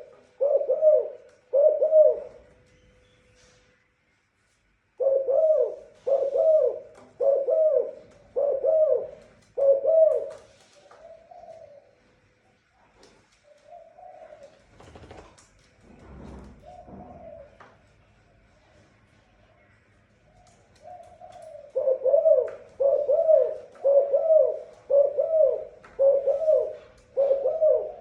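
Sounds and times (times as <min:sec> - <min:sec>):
dove cooing: 0:00.0 - 0:02.5, 0:05.0 - 0:12.0, 0:13.4 - 0:15.0, 0:16.5 - 0:17.6, 0:20.4 - 0:28.0.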